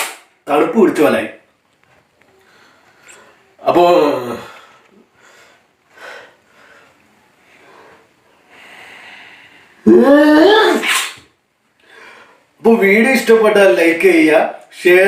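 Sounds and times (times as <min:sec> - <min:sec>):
loud falling voiced sound: 0:09.8 - 0:11.0
loud strained voiced sound: 0:09.8 - 0:11.2.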